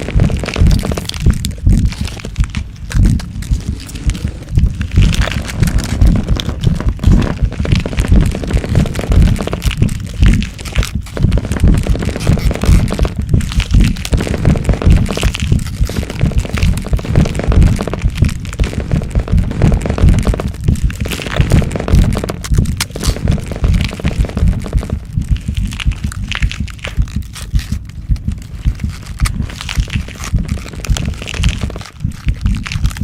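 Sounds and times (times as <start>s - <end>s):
cracks and crunches: 0.0s - 33.0s
deep rumble: 0.0s - 33.0s.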